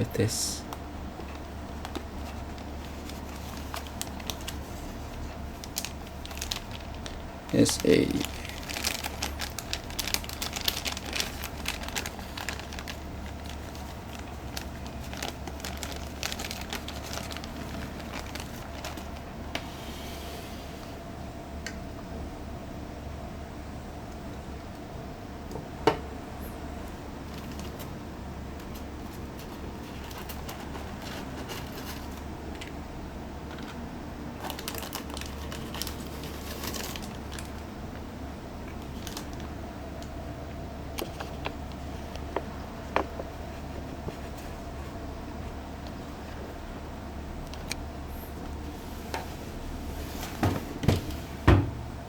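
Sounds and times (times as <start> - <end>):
steady low hum: 0.0 - 52.0
plastic packaging crinkling: 1.2 - 19.4, 27.2 - 27.9, 28.6 - 32.7, 34.4 - 37.7, 38.7 - 40.1
plastic rustling: 1.2 - 19.7, 27.2 - 27.9, 28.6 - 32.7, 34.4 - 37.7, 38.7 - 39.5, 40.9 - 45.0.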